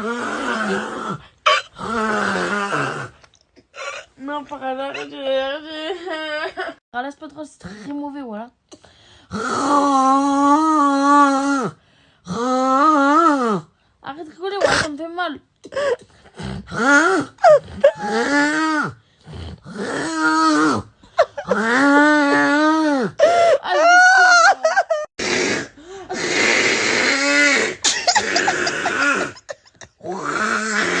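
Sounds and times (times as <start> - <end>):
person making snoring noises: 0.0 - 3.2, 9.3 - 13.7, 15.8 - 23.8, 25.2 - 31.0
rasping breathy noise: 25.1 - 31.0.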